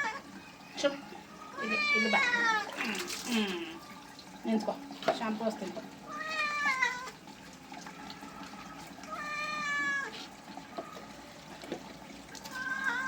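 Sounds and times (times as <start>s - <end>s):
cat meowing: 1.5s - 2.8s, 6.1s - 7.2s, 8.1s - 10.1s, 12.5s - 13.0s.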